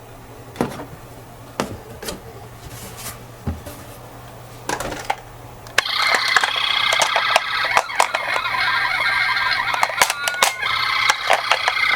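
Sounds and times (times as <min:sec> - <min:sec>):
toy cars clicking and knocking: 0:05.0 - 0:11.9.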